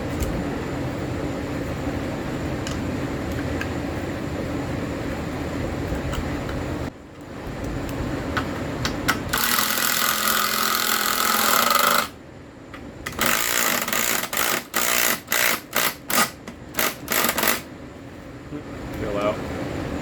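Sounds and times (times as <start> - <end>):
power tool running: 9.3 - 12.2, 13.1 - 17.7
power tool trigger bursts: 9.3 - 12.2, 13.1 - 17.7.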